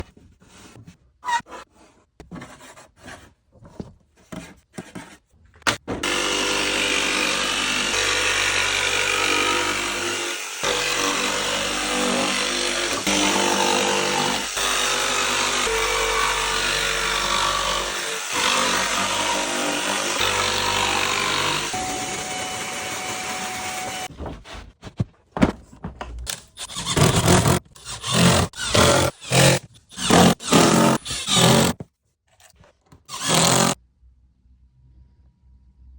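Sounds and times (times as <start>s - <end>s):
knocks and clatter of handling: 2.1s - 6.0s, 24.1s - 26.6s
handheld power tool running: 5.7s - 24.1s, 26.3s - 31.8s, 33.1s - 33.8s.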